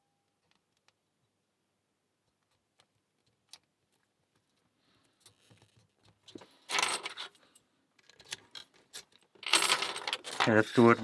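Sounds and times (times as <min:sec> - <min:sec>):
metallic clatter and jangle: 0:06.7 - 0:07.6, 0:09.4 - 0:10.7.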